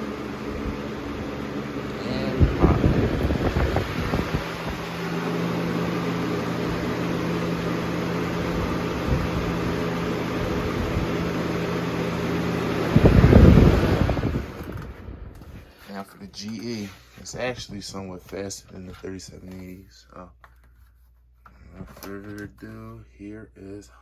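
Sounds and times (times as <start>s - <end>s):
loud low rumble: 0.0s - 5.0s
box fan motor hum: 0.0s - 20.9s
rush of air: 12.8s - 15.7s.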